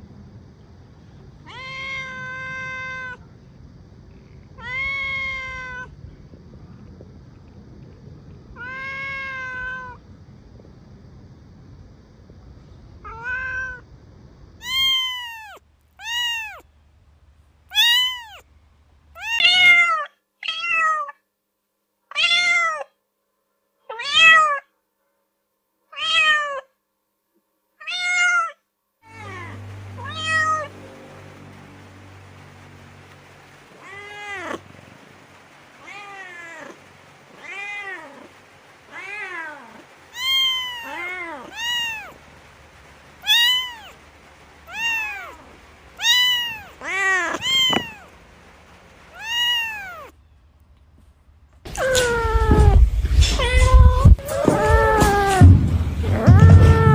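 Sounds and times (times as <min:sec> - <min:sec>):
low steady hum: 0:00.0 - 0:19.2
cat meowing: 0:01.4 - 0:03.2, 0:04.6 - 0:05.9, 0:08.6 - 0:10.0, 0:13.0 - 0:13.8, 0:14.6 - 0:16.7, 0:17.7 - 0:18.4, 0:19.2 - 0:21.2, 0:22.1 - 0:23.0, 0:23.9 - 0:24.7, 0:25.9 - 0:26.7, 0:27.8 - 0:30.8, 0:33.8 - 0:34.6, 0:35.8 - 0:42.2, 0:43.2 - 0:44.0, 0:44.6 - 0:48.2, 0:49.1 - 0:50.2, 0:51.7 - 0:56.9.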